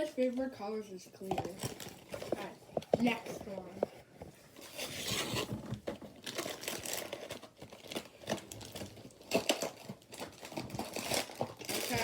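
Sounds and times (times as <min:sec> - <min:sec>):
packaging crinkling and tearing: 0:04.6 - 0:12.0.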